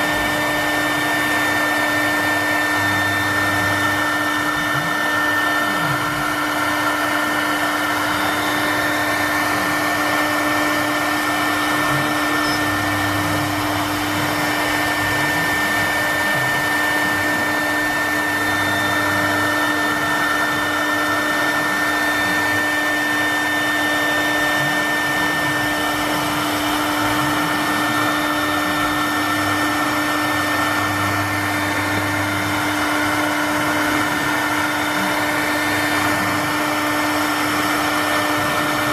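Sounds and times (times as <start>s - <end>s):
lower motor sounds: 0.0s - 38.9s
spindle motor whine: 0.0s - 38.9s.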